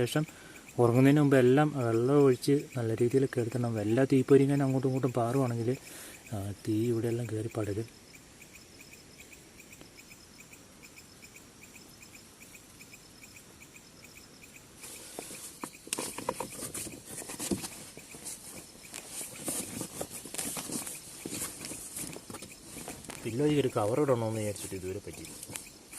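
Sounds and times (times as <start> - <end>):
crickets chirping: 0.0 - 25.9
gear rustling and knocking: 15.2 - 25.7.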